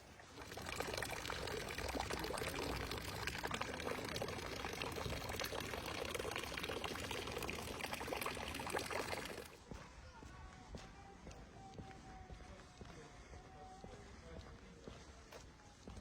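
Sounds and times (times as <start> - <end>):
running water splashing: 0.0 - 9.6.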